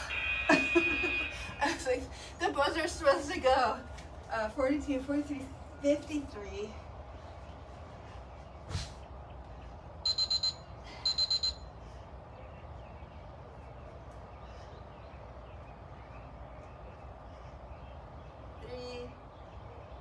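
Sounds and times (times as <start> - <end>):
high-pitched timer beeps: 10.1 - 11.7.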